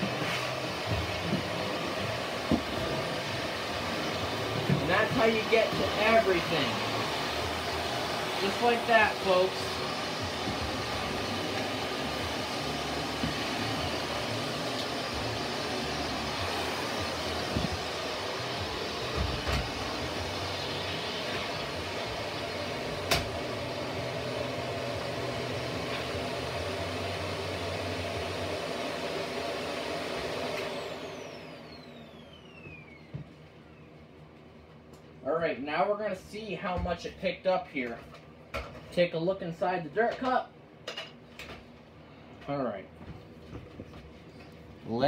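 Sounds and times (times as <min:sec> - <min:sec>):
vacuum motor spinning down: 0:00.0 - 0:33.9
vacuum cleaner running: 0:00.0 - 0:34.0, 0:35.4 - 0:38.0.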